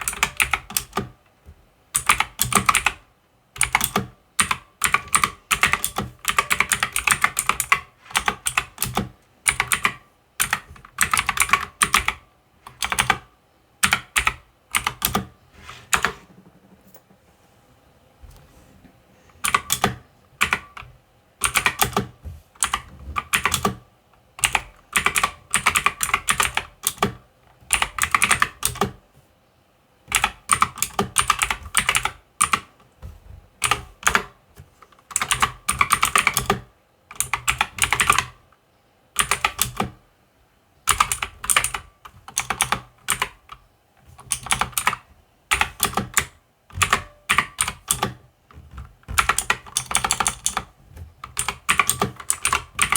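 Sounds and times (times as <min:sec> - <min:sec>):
mechanical keyboard typing: 0:00.0 - 0:01.2, 0:01.9 - 0:17.0, 0:19.4 - 0:23.8, 0:24.4 - 0:29.0, 0:30.1 - 0:32.9, 0:33.6 - 0:34.4, 0:35.0 - 0:38.4, 0:39.2 - 0:40.0, 0:40.8 - 0:52.9.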